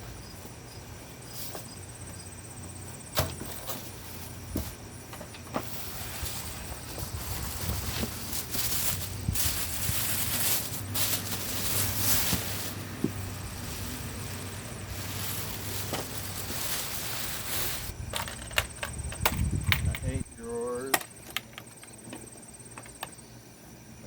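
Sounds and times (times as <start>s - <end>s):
packaging rustling and scraping: 3.2s - 19.0s.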